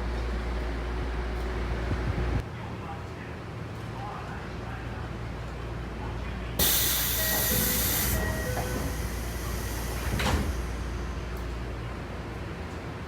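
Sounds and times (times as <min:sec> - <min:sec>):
low rumble of stopped train: 0:00.0 - 0:13.0
compressed air hiss: 0:06.6 - 0:11.3.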